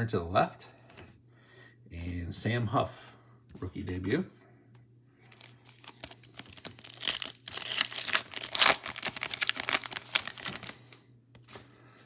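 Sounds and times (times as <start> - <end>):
foil wrapper crinkling and tearing: 5.4 - 11.0.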